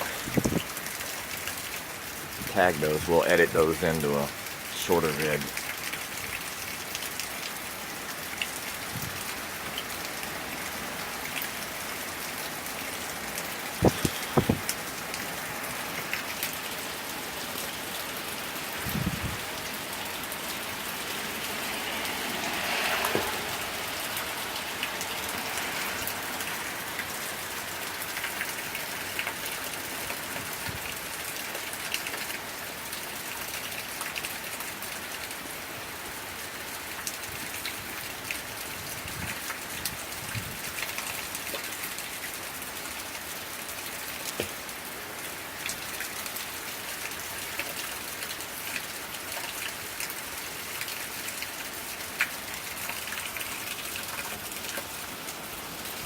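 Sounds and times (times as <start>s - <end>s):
steady rain falling: 0.0s - 56.0s
sharp drip knocks: 13.8s - 14.8s.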